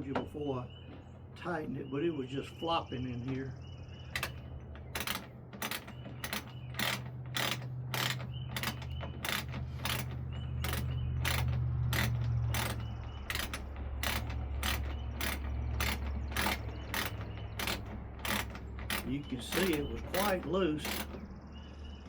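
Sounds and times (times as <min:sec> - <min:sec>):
socket ratchet clicking: 0:04.1 - 0:21.4.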